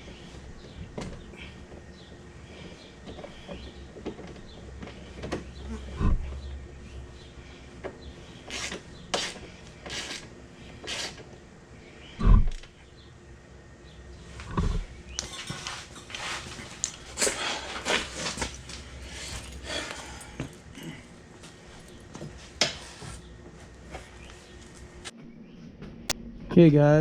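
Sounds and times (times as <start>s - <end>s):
scrapes and rustles: 14.2s - 25.1s.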